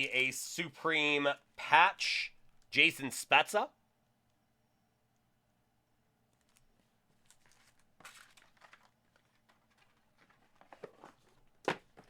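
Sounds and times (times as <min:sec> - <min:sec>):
trading cards packaging crinkling: 0:06.4 - 0:12.0.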